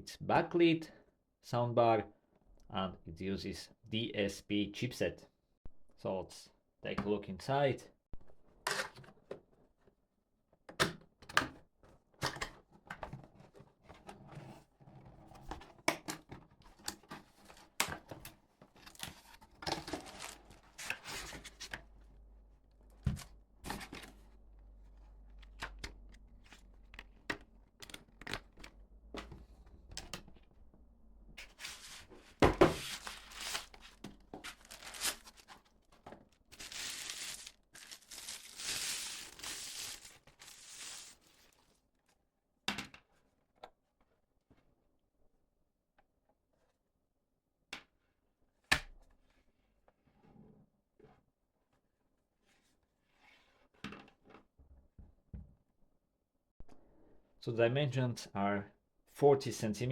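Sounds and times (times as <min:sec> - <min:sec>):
cardboard box being opened: 0:32.5 - 0:35.6, 0:36.5 - 0:41.2
packaging tearing and rustling: 0:32.8 - 0:35.6, 0:36.5 - 0:41.3.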